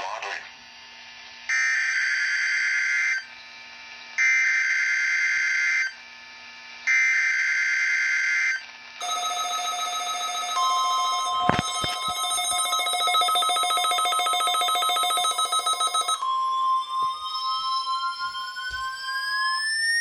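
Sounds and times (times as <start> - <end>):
rapidly pulsing alarm tone: 1.5 - 6.0, 6.8 - 20.0
steady high tone: 9.0 - 20.0.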